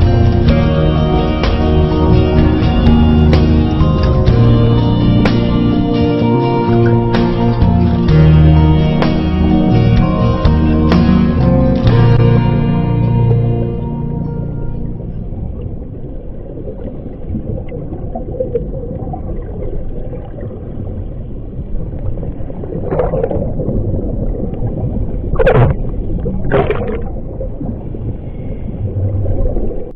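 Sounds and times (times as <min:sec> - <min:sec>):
low underwater rumble: 0:00.0 - 0:29.9
diver exhaling bubbles: 0:22.6 - 0:29.9.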